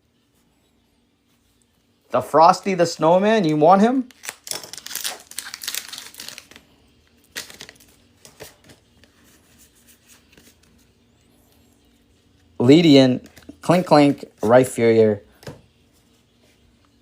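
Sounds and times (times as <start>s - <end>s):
foil wrapper crinkling and tearing: 3.4s - 9.1s.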